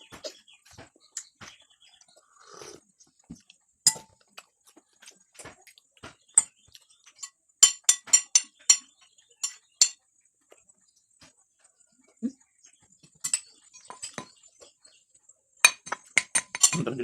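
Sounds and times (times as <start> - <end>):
cutlery clinking against a plate: 3.9 - 4.2, 6.3 - 10.1, 13.0 - 14.5, 15.6 - 17.0.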